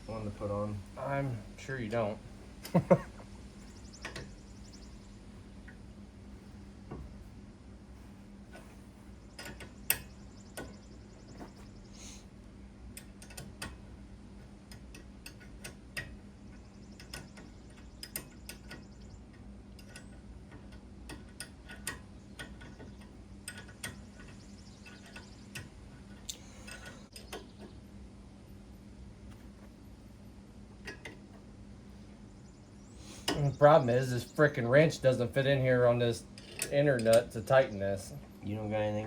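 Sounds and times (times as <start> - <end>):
steady low hum: 0.0 - 39.0
wrench clicking on a nut: 13.0 - 13.8, 17.0 - 18.9, 19.7 - 27.5.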